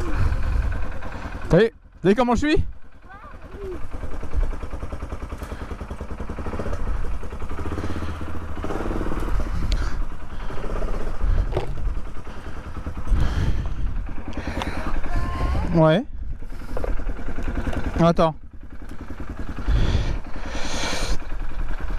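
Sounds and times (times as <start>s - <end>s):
quad engine revving: 0.0s - 21.9s
knocks and scrapes against rocks: 10.7s - 12.1s.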